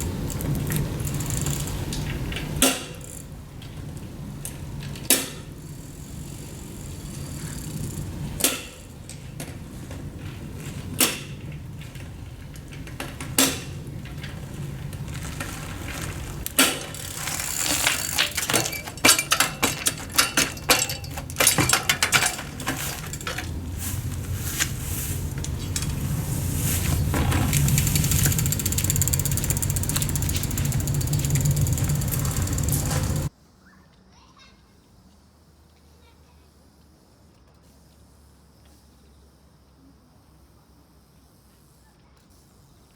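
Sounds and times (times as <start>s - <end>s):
bicycle clicks and knocks: 0.0s - 33.3s
rattling clicks: 11.0s - 33.3s.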